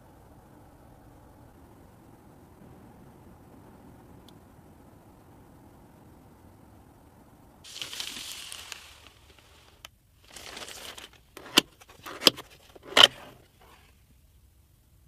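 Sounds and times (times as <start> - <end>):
plastic packaging rustling: 7.7 - 13.5.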